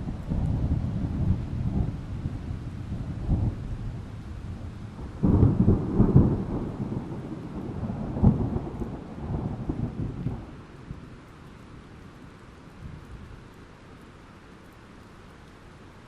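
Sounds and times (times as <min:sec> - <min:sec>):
thunder crack and rumble: 0:00.0 - 0:11.1
steady rain: 0:00.0 - 0:16.0.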